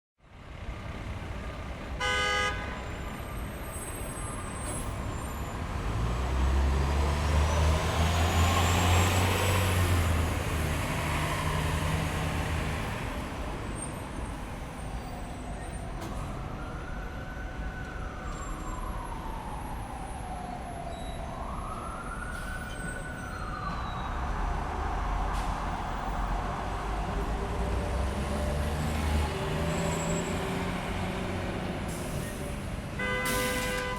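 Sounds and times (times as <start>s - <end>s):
steady traffic noise: 0.2s - 33.9s
car horn toot: 2.0s - 2.8s, 33.0s - 33.9s
emergency siren wailing: 6.5s - 33.8s.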